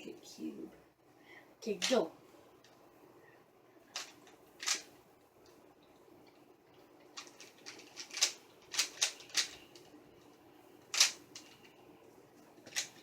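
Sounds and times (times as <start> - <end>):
puzzle cube clicking: 4.0 - 4.9, 7.2 - 9.9, 10.9 - 11.6, 12.7 - 13.0.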